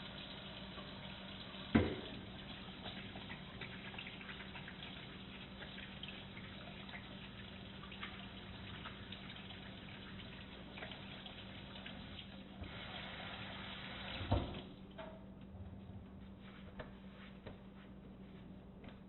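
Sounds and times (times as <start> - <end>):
tap water running into sink: 0.0 - 14.7
water drips: 0.0 - 15.2
knock: 1.8 - 2.1
steady low hum: 14.6 - 19.0.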